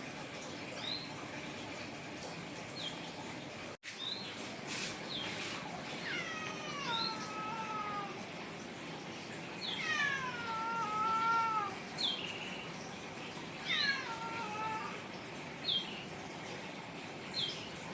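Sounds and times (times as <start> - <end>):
cat meowing: 6.0 - 8.2, 9.6 - 11.9, 13.6 - 15.0.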